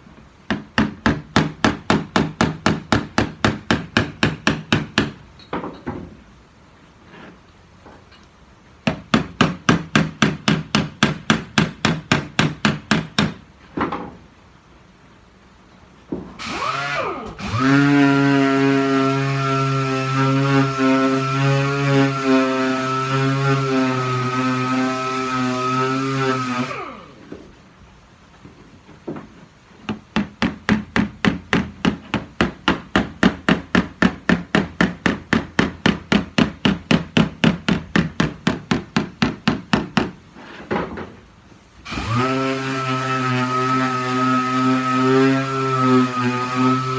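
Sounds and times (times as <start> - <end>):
power tool humming: 16.4 - 27.2, 41.9 - 46.9.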